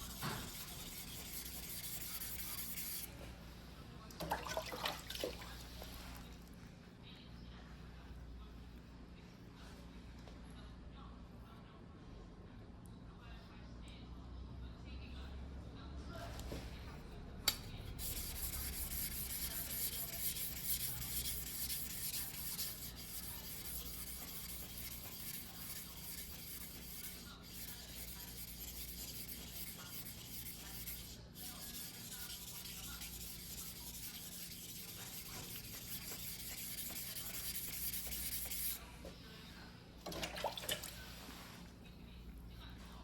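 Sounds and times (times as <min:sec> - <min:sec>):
knife blade rubbing on whetstone: 0:00.0 - 0:03.1, 0:18.0 - 0:38.8.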